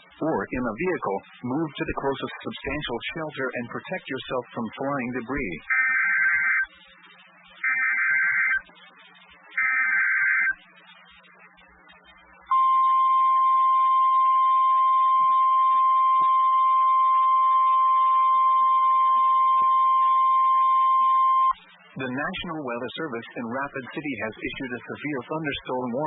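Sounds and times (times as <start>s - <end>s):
harsh digital warble data bursts: 0.2s - 12.4s.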